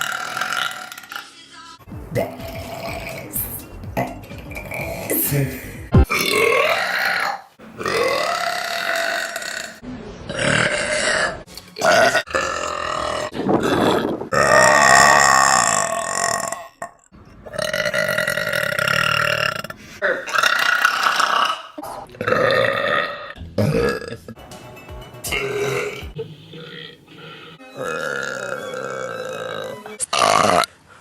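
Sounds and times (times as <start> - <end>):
women burping: 0.0 - 1.2, 17.5 - 24.4, 25.3 - 30.7.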